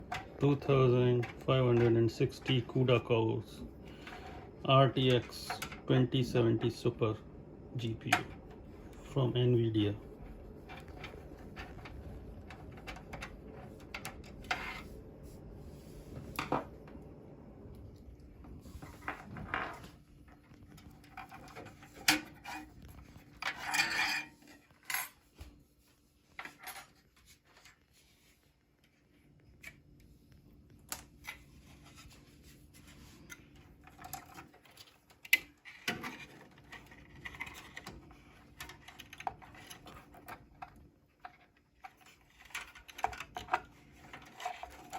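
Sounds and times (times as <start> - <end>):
faint steady hum: 0.0 - 44.9
scraping and rubbing: 10.0 - 16.6, 18.6 - 28.4.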